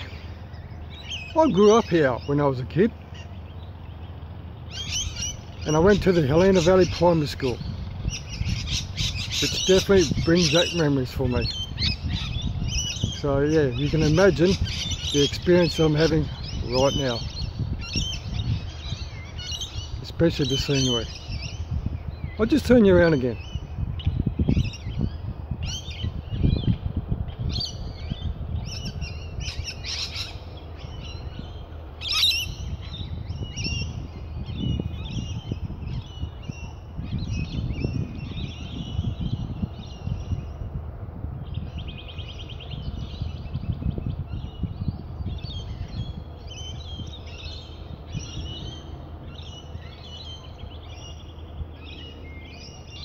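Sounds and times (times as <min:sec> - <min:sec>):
low rumble: 0:00.0 - 0:20.1
birds calling and chirping: 0:00.0 - 0:53.0.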